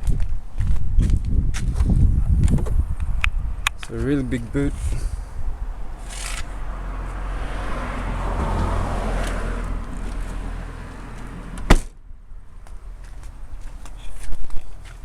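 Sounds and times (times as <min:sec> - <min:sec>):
car passing: 0:03.4 - 0:14.0
car boot lid slamming: 0:11.4 - 0:12.0.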